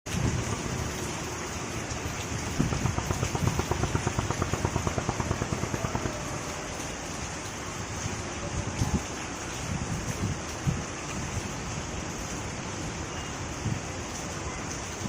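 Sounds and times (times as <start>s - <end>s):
steady hiss: 2.3s - 7.1s.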